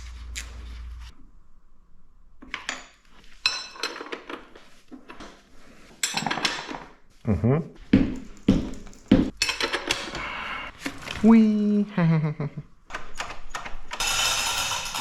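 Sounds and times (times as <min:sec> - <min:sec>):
metal tools clinking: 0:08.1 - 0:09.9.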